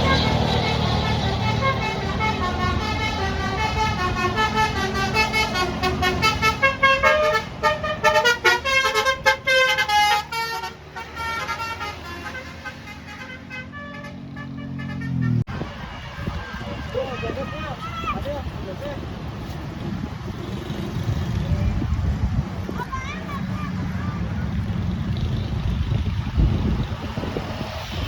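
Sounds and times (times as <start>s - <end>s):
bus engine running: 0.0s - 16.9s
musical bus horn tune: 0.0s - 17.0s.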